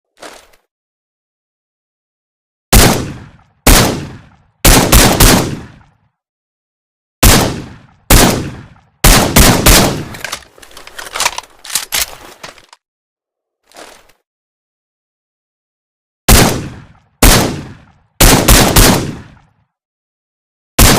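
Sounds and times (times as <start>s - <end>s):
suppressed rifle shots: 2.8s - 5.8s, 7.2s - 12.1s, 16.3s - 19.3s
clatter and clicks: 10.1s - 12.8s.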